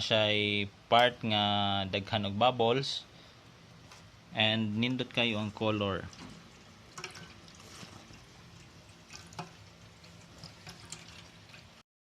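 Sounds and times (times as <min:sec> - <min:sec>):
liquid dripping and trickling: 0:05.4 - 0:11.8.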